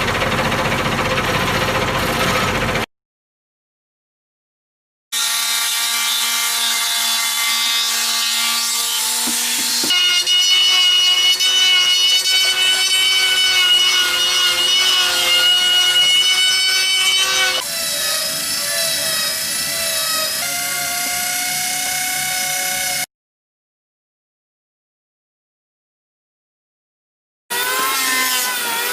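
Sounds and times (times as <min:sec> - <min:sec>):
power tool motor whining: 0:07.7 - 0:23.1.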